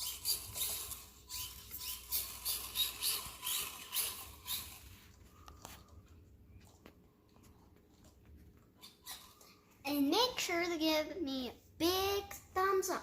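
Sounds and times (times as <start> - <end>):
rc car drivetrain whining: 0.0 - 4.9.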